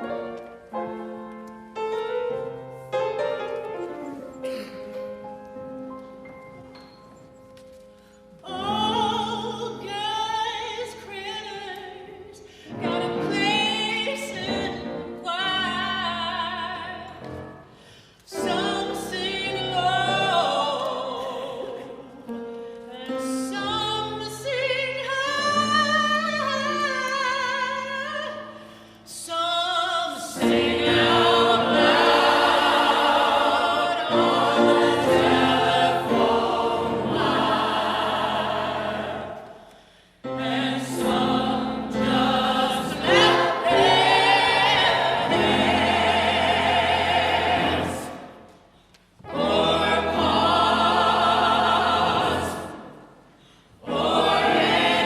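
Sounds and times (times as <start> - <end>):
choir singing with accompaniment: 17.0 - 23.6, 30.1 - 55.0.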